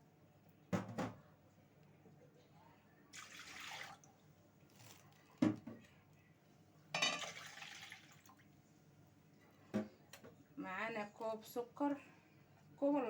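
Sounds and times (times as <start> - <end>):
milk pouring into a pot: 3.1 - 5.2, 7.2 - 8.6.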